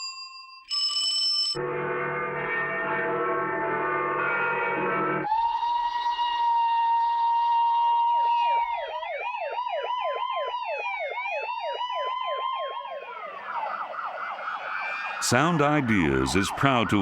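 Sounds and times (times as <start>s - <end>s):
slow wailing siren: 1.6s - 17.0s
fast yelping siren: 5.2s - 15.2s.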